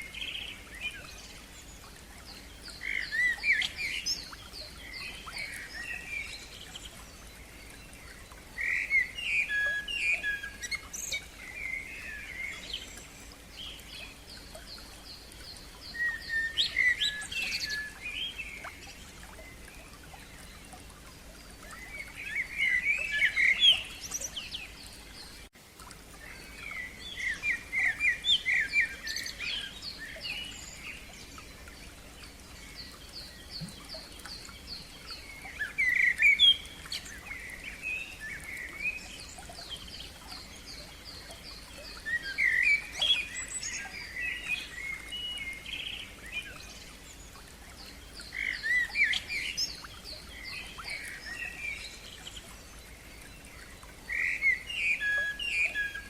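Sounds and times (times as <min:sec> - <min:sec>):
songbird singing: 0:00.0 - 0:56.0.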